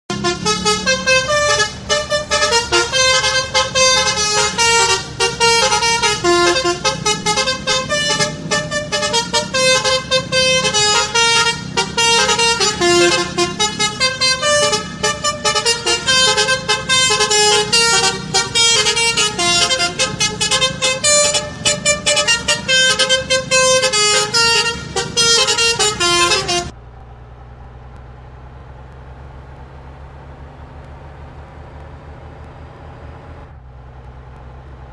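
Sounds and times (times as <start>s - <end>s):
bus horn melody: 0.1s - 26.8s
bus engine low hum: 0.1s - 34.9s.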